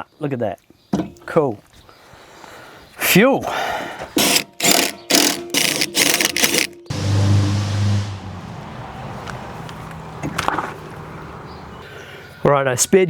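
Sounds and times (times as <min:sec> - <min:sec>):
rotary tool grinding metal: 0:04.2 - 0:06.9.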